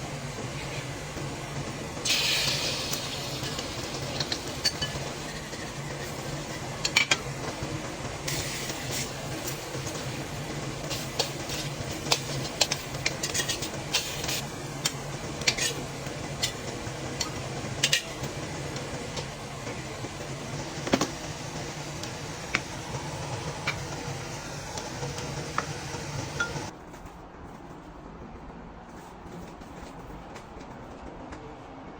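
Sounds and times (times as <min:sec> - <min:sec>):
steady background hum: 0:00.0 - 0:31.9
utensils clinking against pots: 0:02.0 - 0:10.2, 0:10.8 - 0:19.3, 0:25.1 - 0:26.7.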